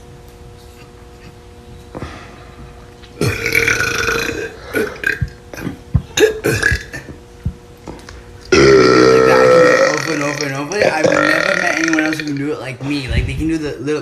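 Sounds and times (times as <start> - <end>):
man burping: 3.2 - 7.2, 8.5 - 12.4.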